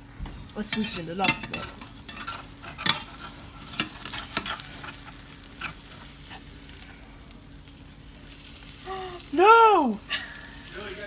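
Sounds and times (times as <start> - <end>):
omelet sizzling in a frying pan: 0.0 - 11.0
spatula scraping and knocking pan: 0.6 - 6.5.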